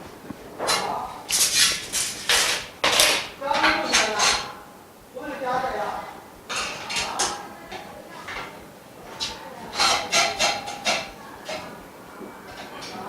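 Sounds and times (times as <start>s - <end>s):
metal frame bars scraping and knocking: 0.6s - 4.6s, 9.1s - 11.8s.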